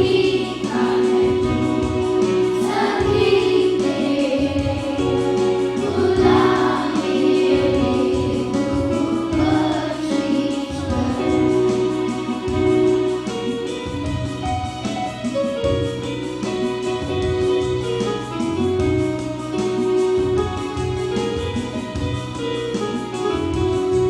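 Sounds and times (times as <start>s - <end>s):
children singing a prayer: 0.0s - 14.2s
musical accompaniment: 0.0s - 24.0s.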